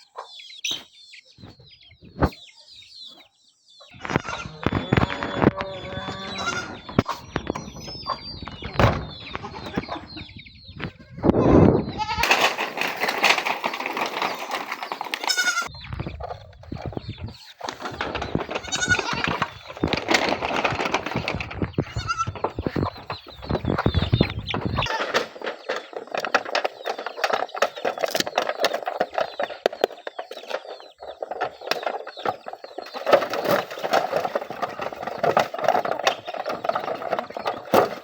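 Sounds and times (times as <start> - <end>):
goats bleating: 4.0 - 6.9, 11.4 - 12.3, 15.2 - 15.7, 18.6 - 19.4
rustling noise: 4.0 - 38.0.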